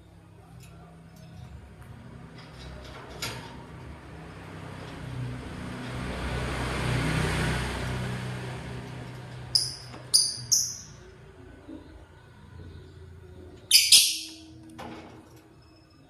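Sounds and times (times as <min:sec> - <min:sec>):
motor vehicle passing: 0:03.5 - 0:14.6
high bird chirps: 0:09.5 - 0:11.1, 0:13.7 - 0:14.6.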